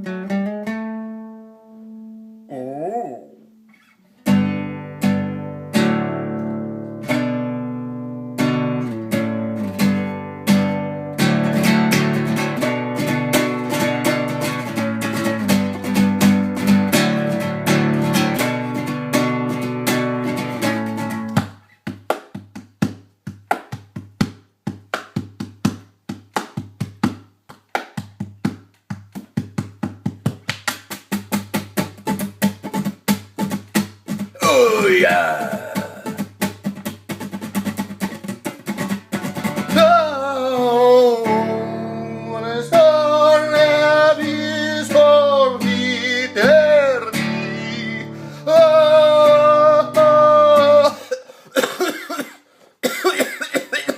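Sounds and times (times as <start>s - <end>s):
acoustic guitar strumming: 0.0s - 2.3s, 3.5s - 21.8s, 30.9s - 51.0s.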